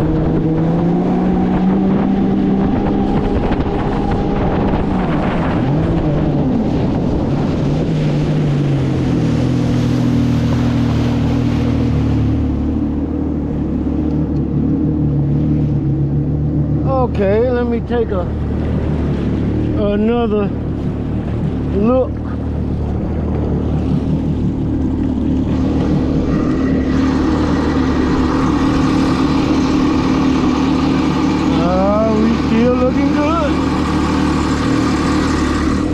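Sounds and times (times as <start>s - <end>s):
wind noise on microphone: 0.0s - 12.4s
personal watercraft engine running: 0.0s - 35.9s.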